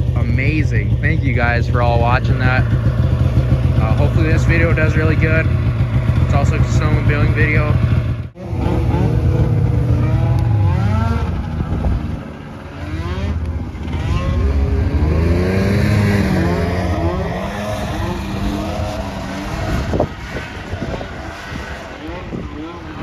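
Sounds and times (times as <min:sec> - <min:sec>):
snowmobile engine revving: 0:00.0 - 0:23.0.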